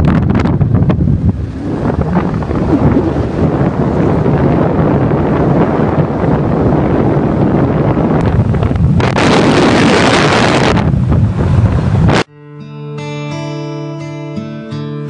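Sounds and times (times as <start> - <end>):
wind buffeting microphone: 0.0 - 12.3
loud rushing noise: 0.4 - 12.3.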